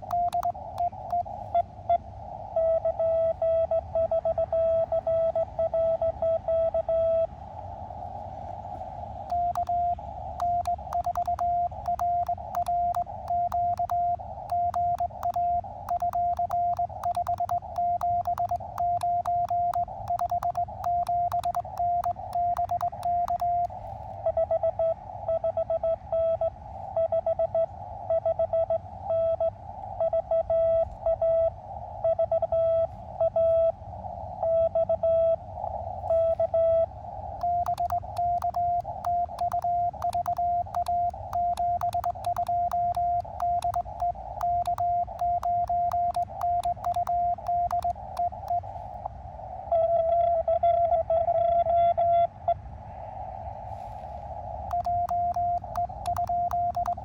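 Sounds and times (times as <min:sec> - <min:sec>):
morse code sidetone beeps: 0:00.0 - 0:01.7, 0:02.6 - 0:07.3, 0:09.3 - 0:31.5, 0:36.1 - 0:48.7, 0:54.7 - 0:57.0
higher pitched morse code reply: 0:10.4 - 0:23.7, 0:37.5 - 0:48.6
sharp radio clicks: 0:37.4 - 0:48.6, 0:54.7 - 0:57.0.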